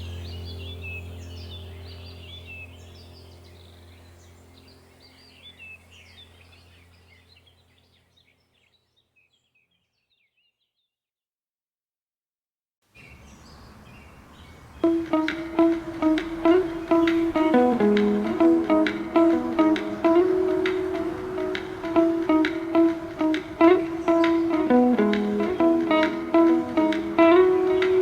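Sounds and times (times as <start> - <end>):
small birds chirping: 0.0 - 11.0, 12.9 - 28.0
low steady drone: 14.8 - 28.0.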